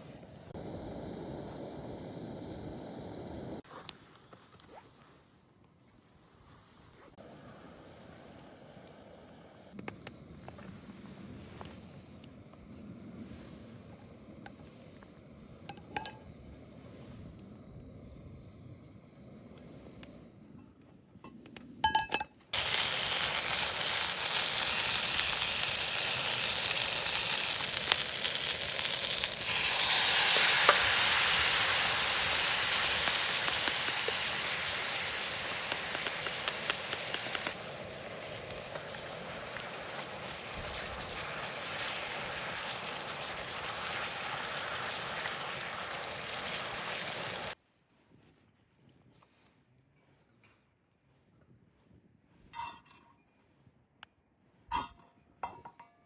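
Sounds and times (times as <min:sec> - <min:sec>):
food sizzling in a frying pan: 0:22.6 - 0:47.6.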